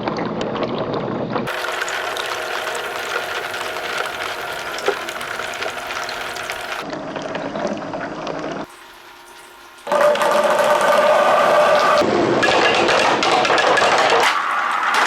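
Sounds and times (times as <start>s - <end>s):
water rushing down a slide: 1.4s - 6.8s.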